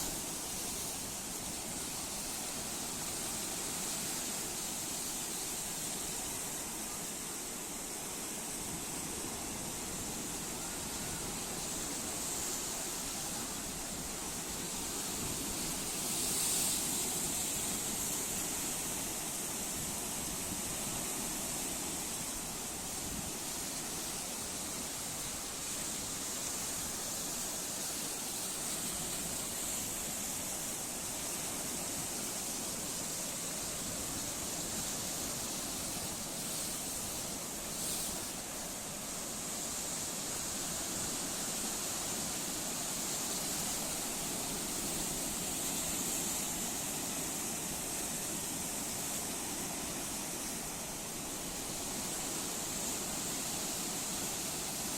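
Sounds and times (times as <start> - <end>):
sea waves surf: 0.0 - 54.9.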